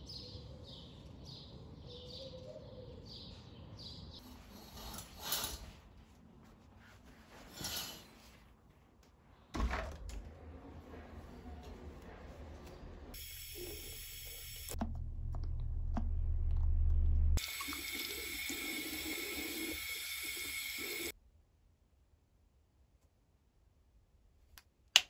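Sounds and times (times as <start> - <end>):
water running: 12.7 - 15.6, 17.4 - 21.1.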